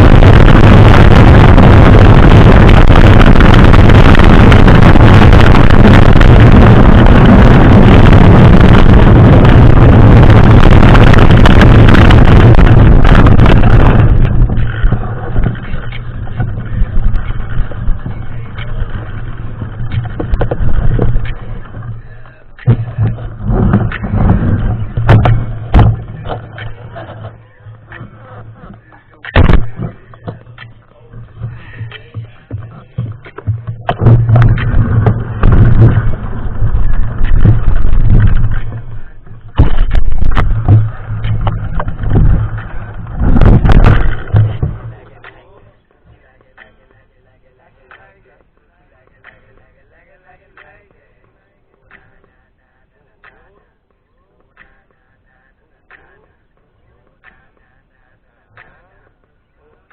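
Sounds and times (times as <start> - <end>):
wind and tyres rumbling: 0.0 - 51.1
bike rattling and knocking: 11.6 - 45.3.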